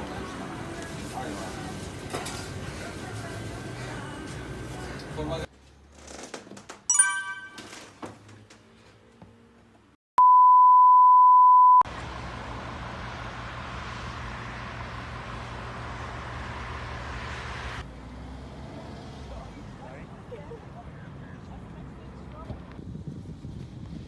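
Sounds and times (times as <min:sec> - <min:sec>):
electronic beep tone: 0:10.2 - 0:11.8.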